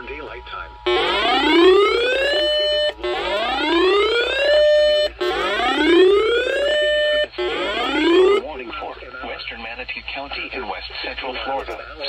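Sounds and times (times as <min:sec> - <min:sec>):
weather radio siren whoop: 0:00.9 - 0:08.4.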